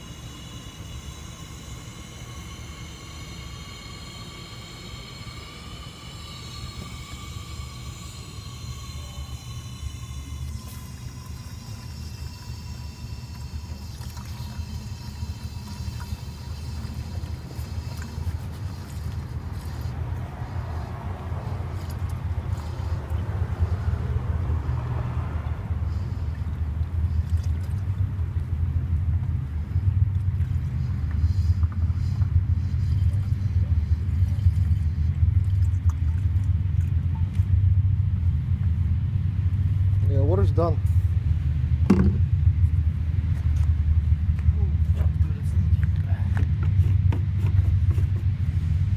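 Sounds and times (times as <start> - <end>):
water pouring: 0.0 - 23.3
car engine idling: 0.0 - 48.9.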